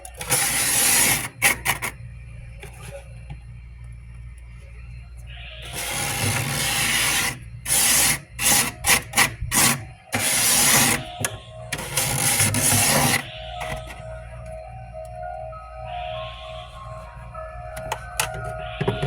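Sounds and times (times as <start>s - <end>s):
steady low hum: 0.0s - 19.0s
frost being scraped: 0.2s - 2.0s, 5.6s - 14.0s.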